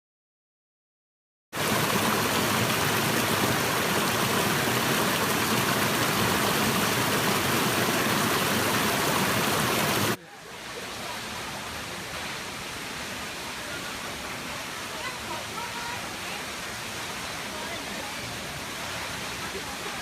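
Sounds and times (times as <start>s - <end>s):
waterfall rushing: 1.6s - 20.0s.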